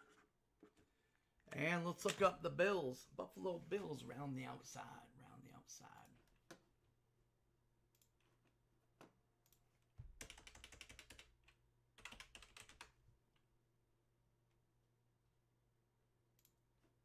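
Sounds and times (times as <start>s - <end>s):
typing on computer keyboard: 10.1s - 13.0s.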